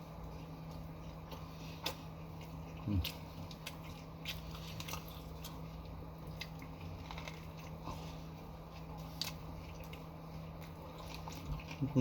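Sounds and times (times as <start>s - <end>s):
person chewing: 0.0s - 12.0s
steady low hum: 0.0s - 12.0s.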